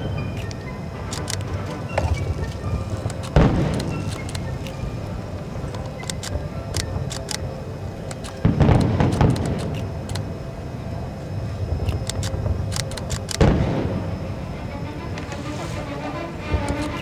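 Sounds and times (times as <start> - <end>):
firework booms: 1.5 - 5.8, 8.4 - 10.1, 13.4 - 14.5
firework pops and crackles: 1.9 - 4.9, 8.4 - 10.2.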